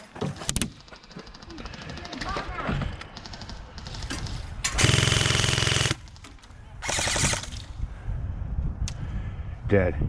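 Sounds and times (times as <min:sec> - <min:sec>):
airsoft rifle firing bursts: 0:03.2 - 0:06.2, 0:06.8 - 0:07.5.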